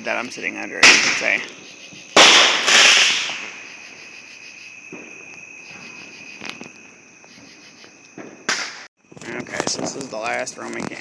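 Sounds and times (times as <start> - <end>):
insects chirping: 0.0 - 11.0
firework pops: 0.8 - 3.6, 8.1 - 10.1
firework burst: 2.2 - 3.7.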